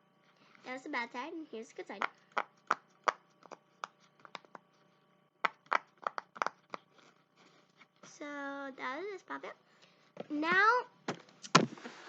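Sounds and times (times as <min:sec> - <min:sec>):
fidget toy bubbles popping: 0:01.9 - 0:04.6, 0:05.4 - 0:06.8.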